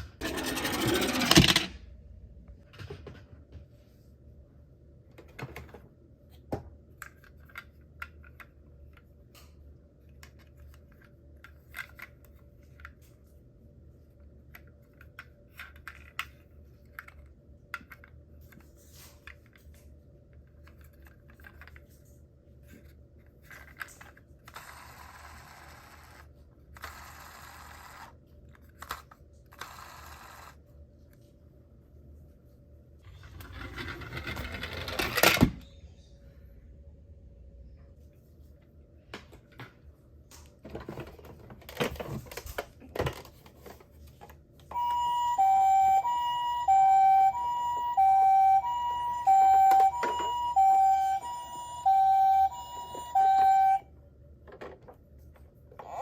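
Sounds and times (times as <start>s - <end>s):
toy cars clicking and clinking: 23.4s - 30.6s.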